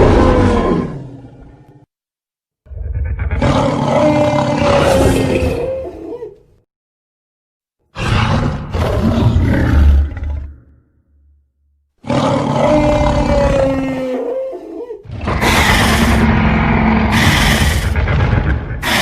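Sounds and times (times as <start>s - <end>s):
giant monster roar: 0.0s - 1.8s, 2.7s - 5.9s, 8.0s - 10.7s, 12.0s - 14.5s, 15.1s - 19.0s.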